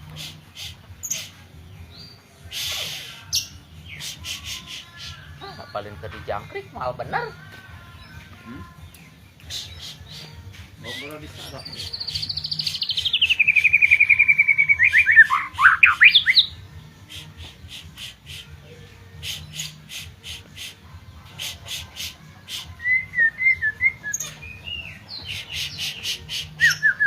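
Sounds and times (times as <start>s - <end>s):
songbird trilling and warbling: 0.1s - 7.4s, 8.0s - 27.0s.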